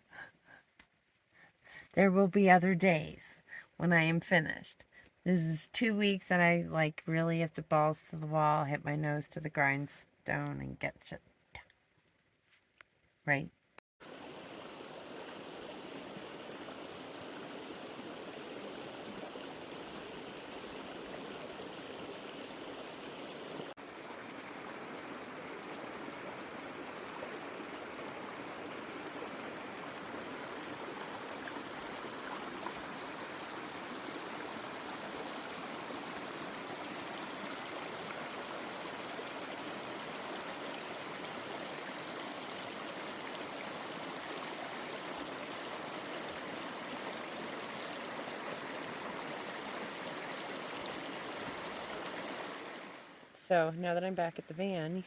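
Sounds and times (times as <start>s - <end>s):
running water rushing: 14.0s - 53.3s.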